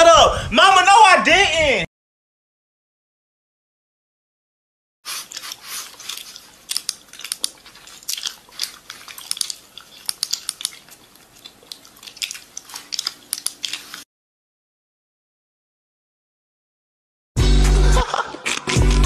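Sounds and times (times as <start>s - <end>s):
crisp crunching and clicking: 5.1s - 14.0s.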